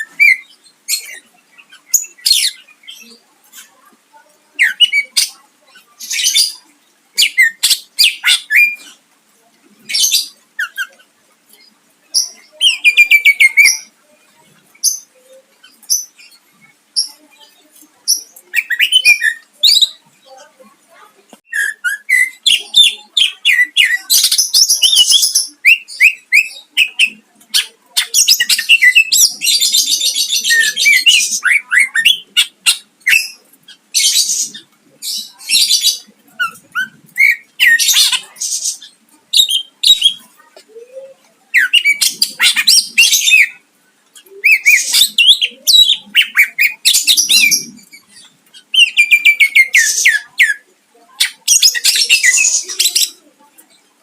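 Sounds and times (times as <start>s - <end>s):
songbird trilling and mimicking: 14.8s - 20.0s, 21.4s - 53.2s.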